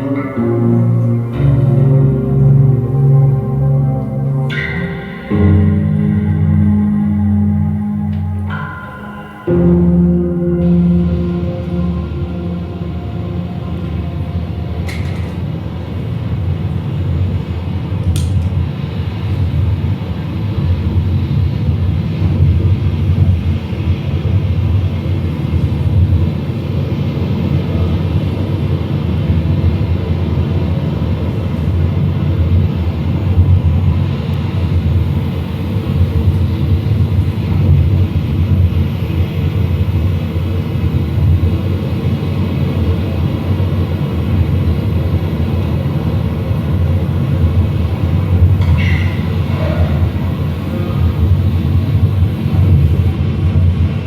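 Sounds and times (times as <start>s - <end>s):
low rumbling noise music drone: 0.0s - 54.0s.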